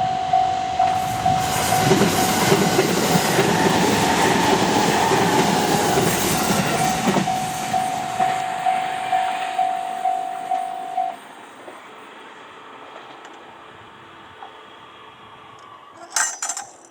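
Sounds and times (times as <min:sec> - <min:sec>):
level-crossing alarm ringing: 0:00.0 - 0:11.6
electric train passing on rails: 0:00.0 - 0:16.9.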